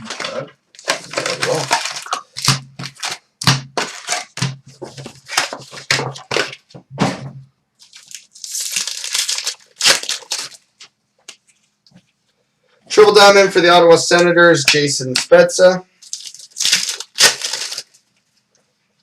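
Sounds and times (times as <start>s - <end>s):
foil wrappers crinkling and tearing: 0.0s - 6.6s, 7.8s - 10.9s, 16.0s - 18.1s.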